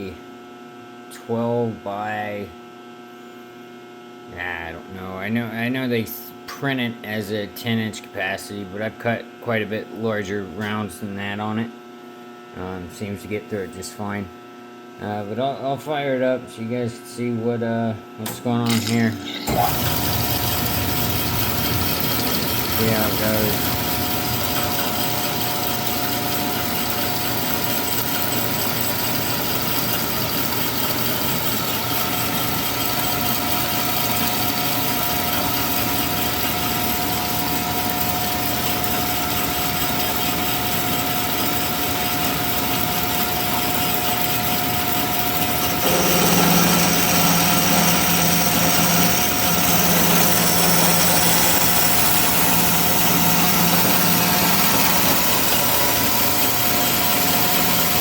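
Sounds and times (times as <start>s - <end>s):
bandsaw humming: 18.2s - 58.0s
bandsaw blade cutting metal: 18.7s - 26.7s, 45.4s - 58.0s.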